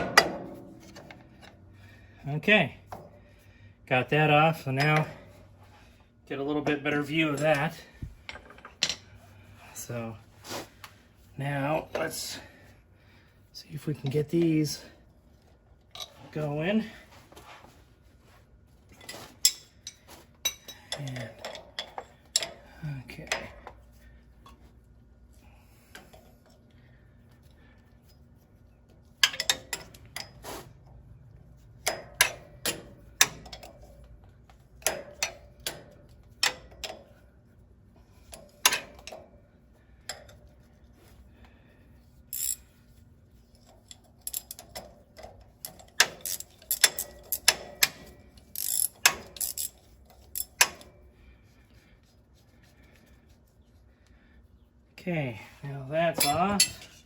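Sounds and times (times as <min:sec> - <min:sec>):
hand tools clicking on steel: 0:42.3 - 0:42.6, 0:43.7 - 0:50.9.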